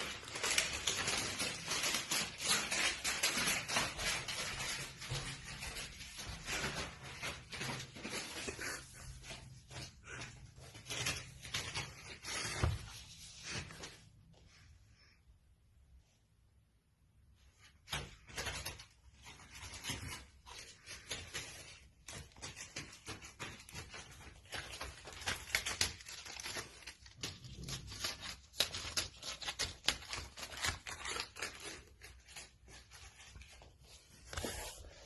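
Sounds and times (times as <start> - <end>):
scratching rustling and tapping: 0.0 - 13.0.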